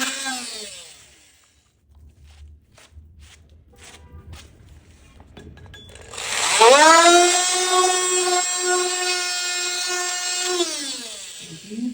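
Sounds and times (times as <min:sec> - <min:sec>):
power tool motor whining: 0:00.0 - 0:01.6, 0:05.9 - 0:11.9.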